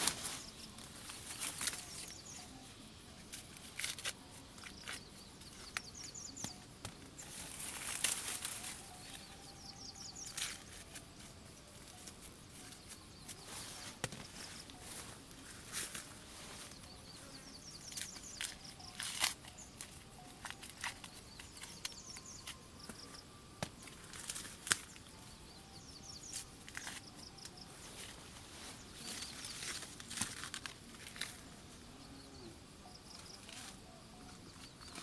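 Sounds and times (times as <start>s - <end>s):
leaves and stalks rustling: 0.0s - 32.2s, 32.8s - 35.0s
plant stalks snapping: 3.3s - 5.0s, 5.7s - 9.2s, 17.9s - 23.0s, 23.6s - 25.1s, 29.2s - 31.4s
high chirping trills: 4.6s - 15.6s, 16.3s - 30.0s.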